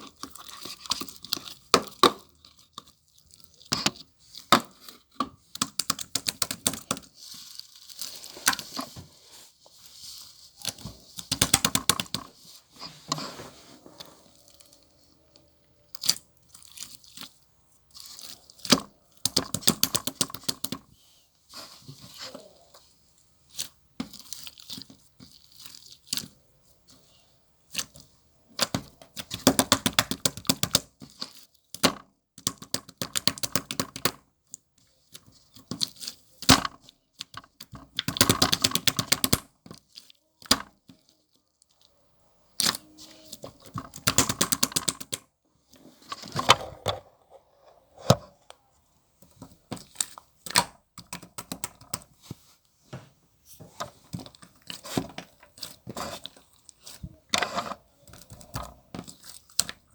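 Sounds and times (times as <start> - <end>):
slime squishing with popping bubbles: 0.0 - 8.7, 10.6 - 12.3, 14.3 - 20.9, 23.4 - 26.9, 27.5 - 45.3, 49.2 - 52.2, 58.0 - 59.9.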